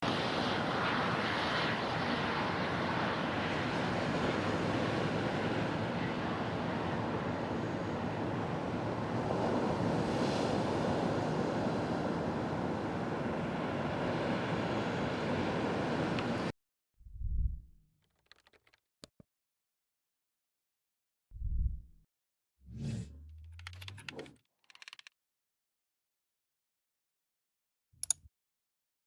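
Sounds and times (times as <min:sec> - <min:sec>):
blizzard wind rushing: 0:00.0 - 0:16.5.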